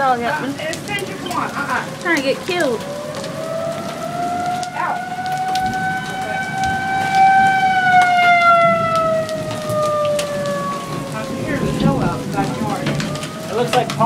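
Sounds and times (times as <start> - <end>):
steady rain: 0.0 - 14.0
warning siren wailing: 0.0 - 14.0.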